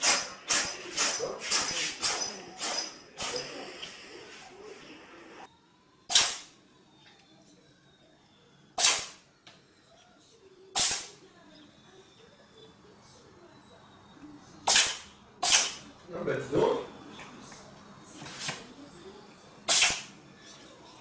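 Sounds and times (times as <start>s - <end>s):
animal sneezing: 8.8s - 9.2s, 10.8s - 11.2s, 14.6s - 15.8s, 19.7s - 20.1s.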